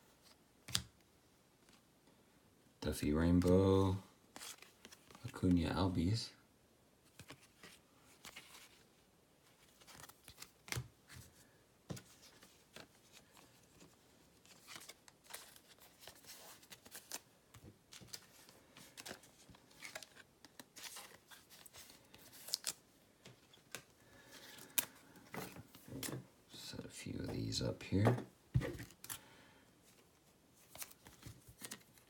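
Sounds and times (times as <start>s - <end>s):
trading cards clicking and rustling: 11.9s - 26.2s, 30.7s - 32.0s.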